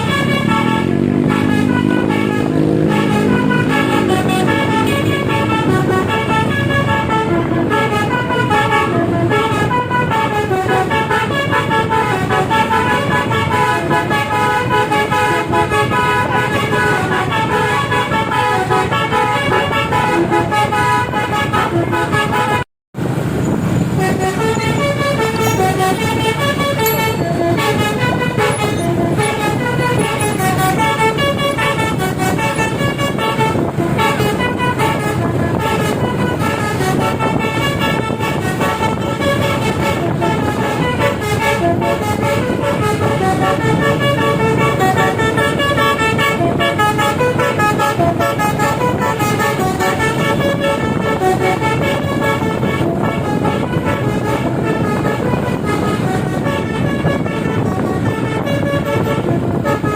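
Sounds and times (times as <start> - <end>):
musical air horn melody: 0.0 - 59.9
vehicle engine running: 23.0 - 35.6.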